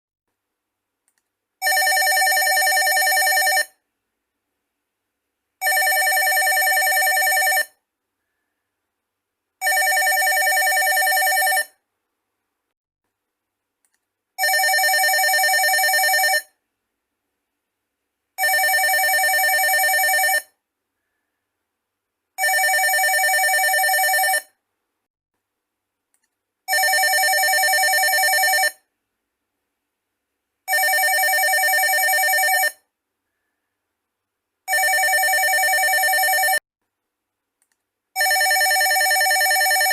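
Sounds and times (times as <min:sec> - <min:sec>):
telephone ringing: 0:01.6 - 0:03.8, 0:05.6 - 0:07.8, 0:09.6 - 0:11.8, 0:14.4 - 0:16.6, 0:18.4 - 0:20.6, 0:22.4 - 0:24.6, 0:26.7 - 0:28.9, 0:30.7 - 0:32.9, 0:34.7 - 0:36.6, 0:38.2 - 0:39.9.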